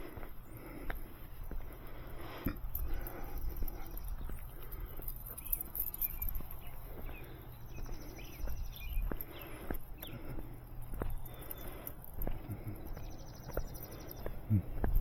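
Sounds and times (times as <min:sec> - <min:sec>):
footsteps clicking outdoors: 0:00.0 - 0:15.0.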